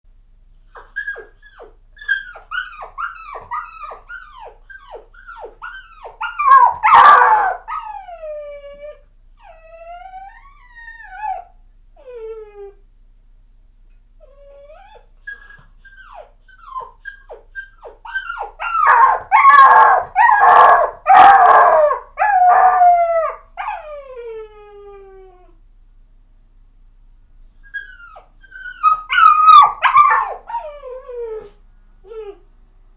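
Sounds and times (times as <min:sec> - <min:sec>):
puppy wailing cries: 0:00.6 - 0:08.2, 0:14.6 - 0:24.0, 0:27.5 - 0:31.5
puppy whimpering: 0:00.6 - 0:08.3, 0:14.2 - 0:24.1, 0:27.4 - 0:31.5.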